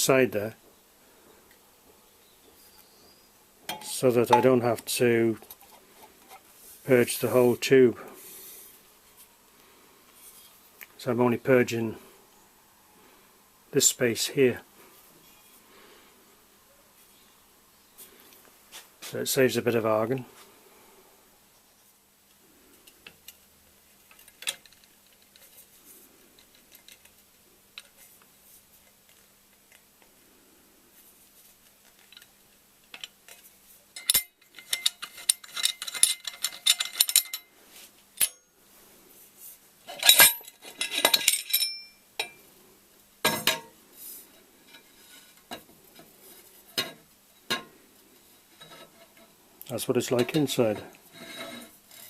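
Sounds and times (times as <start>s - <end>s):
faint steady hum: 0.0s - 52.0s
metal pipe clinking: 3.7s - 4.8s, 32.9s - 37.5s, 38.2s - 38.5s, 39.9s - 42.5s, 43.3s - 43.8s.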